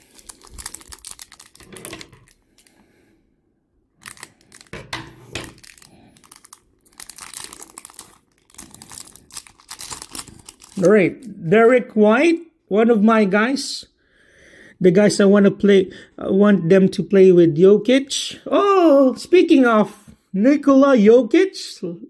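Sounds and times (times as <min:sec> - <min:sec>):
foil wrapper crinkling and tearing: 0:00.0 - 0:02.7, 0:04.0 - 0:11.3.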